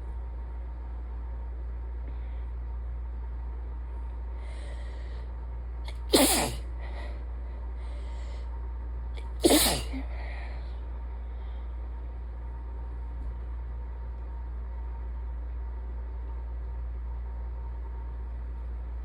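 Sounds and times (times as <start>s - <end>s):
person sneezing: 5.9s - 6.7s, 9.2s - 10.2s
breathy intakes of air: 5.9s - 8.5s.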